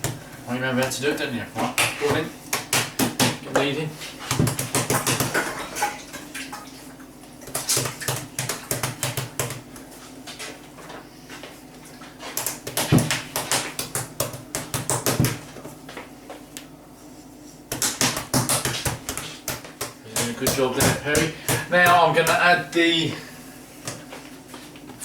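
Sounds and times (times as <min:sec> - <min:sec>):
dough slapping on worktop: 0:00.0 - 0:01.0, 0:01.6 - 0:05.9, 0:07.4 - 0:10.0, 0:12.2 - 0:16.1, 0:17.7 - 0:22.6.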